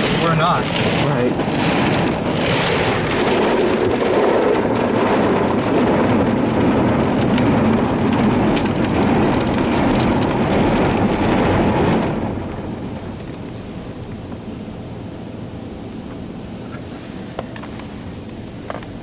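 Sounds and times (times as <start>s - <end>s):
water spray beating on truck: 0.0s - 13.1s.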